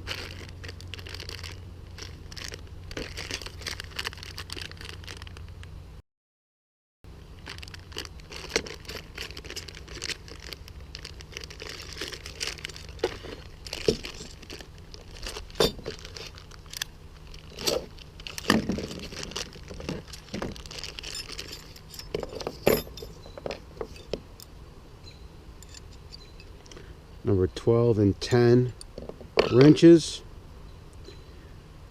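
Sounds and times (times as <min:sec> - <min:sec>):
low steady hum: 0:00.0 - 0:06.0, 0:07.1 - 0:31.9
metal tools clinking and rattling: 0:13.8 - 0:14.4, 0:15.3 - 0:16.8, 0:17.5 - 0:24.2.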